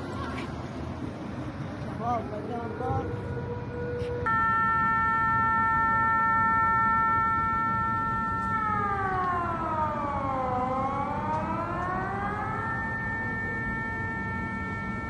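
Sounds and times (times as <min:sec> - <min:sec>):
air-raid siren: 0:02.0 - 0:15.0.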